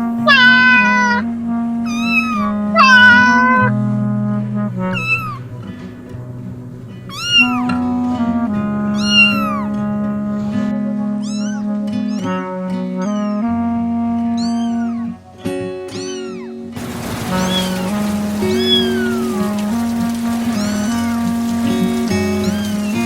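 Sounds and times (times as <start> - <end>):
cat meowing: 0.2 - 3.7, 4.9 - 5.4, 7.1 - 7.8, 9.0 - 9.7, 11.2 - 13.6, 14.4 - 15.2, 15.8 - 16.7, 22.3 - 23.0
music with long held notes: 1.1 - 23.0.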